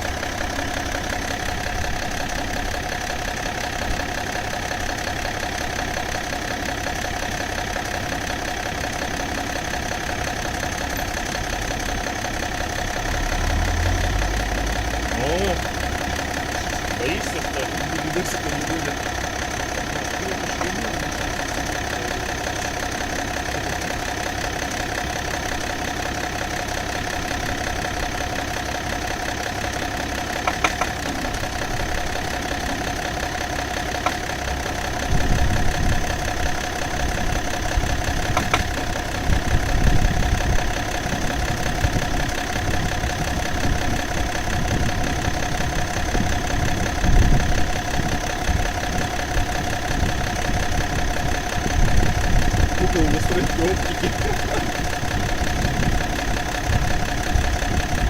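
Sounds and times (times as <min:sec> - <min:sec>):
diesel engine idling: 0:00.0 - 0:58.0
sharp engine knock: 0:30.3 - 0:33.1, 0:33.8 - 0:58.0.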